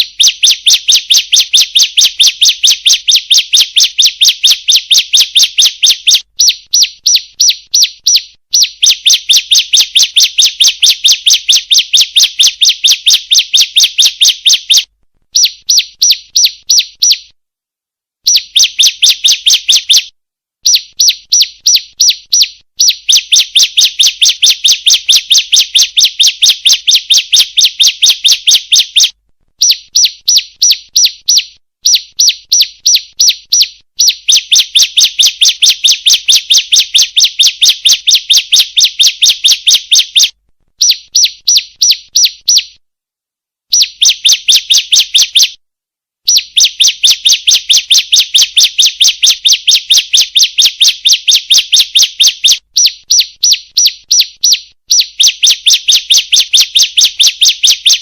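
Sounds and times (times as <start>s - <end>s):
bird sharp high chirps: 0.0s - 17.4s, 18.2s - 42.8s, 43.7s - 45.6s, 46.3s - 58.0s.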